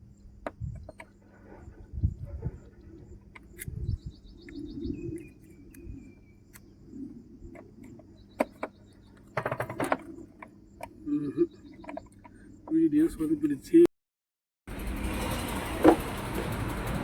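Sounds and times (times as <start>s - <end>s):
insect trills: 0.0s - 13.6s
thin whistled bird call: 0.8s - 7.2s.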